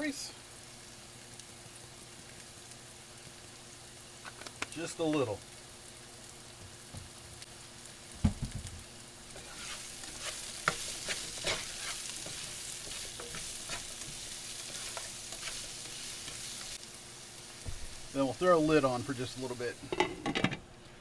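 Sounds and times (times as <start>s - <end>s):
vegetables sizzling in a skillet: 0.0s - 21.0s
utensil scraping a pan: 9.3s - 16.8s.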